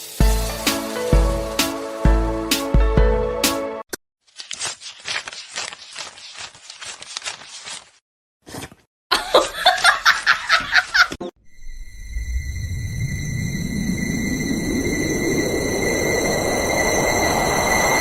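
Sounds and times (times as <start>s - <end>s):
person laughing: 9.1s - 11.3s
low rumble: 11.5s - 18.0s.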